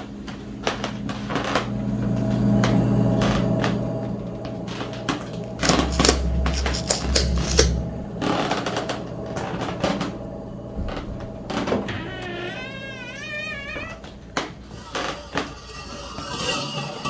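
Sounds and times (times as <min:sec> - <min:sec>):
low hum: 0:00.0 - 0:14.4
clattering clicks and rattles: 0:04.8 - 0:07.9.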